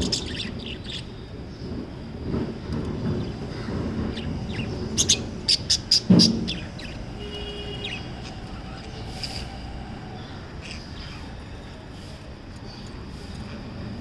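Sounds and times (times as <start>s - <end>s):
budgerigars chirping: 4.1s - 7.2s.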